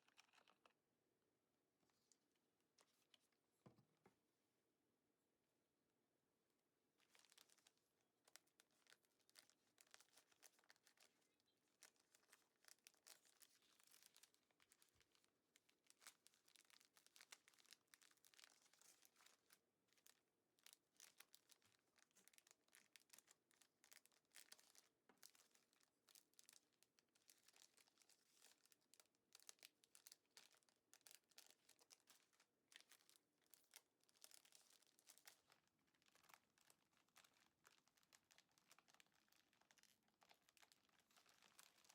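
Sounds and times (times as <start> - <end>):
plastic bags crinkling: 0.0 - 0.7, 7.1 - 7.7, 8.3 - 41.9
small clicks: 0.0 - 0.8.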